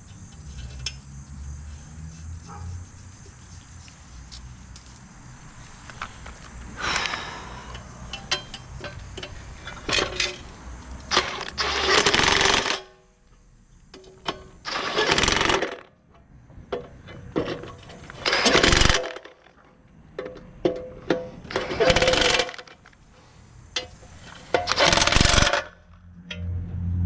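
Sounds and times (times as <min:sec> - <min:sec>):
metallic clicks and clanks: 0:07.7 - 0:10.5, 0:23.7 - 0:26.6
power tool running in bursts: 0:14.7 - 0:15.8, 0:18.2 - 0:19.2, 0:21.5 - 0:22.6, 0:24.7 - 0:25.6.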